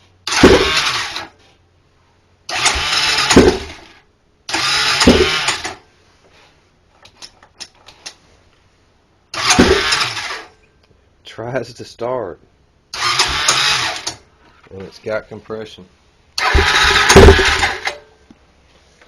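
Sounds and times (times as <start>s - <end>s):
engine cranking without starting: 0.2s - 1.4s, 2.5s - 5.8s, 9.3s - 10.5s, 12.9s - 14.2s, 16.4s - 18.1s.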